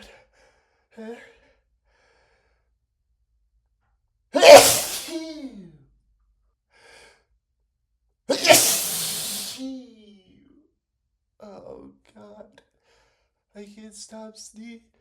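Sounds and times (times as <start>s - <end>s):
faint short vocal sound: 4.4s - 5.2s, 8.3s - 9.6s
man sneezing: 4.4s - 5.3s, 8.3s - 9.6s.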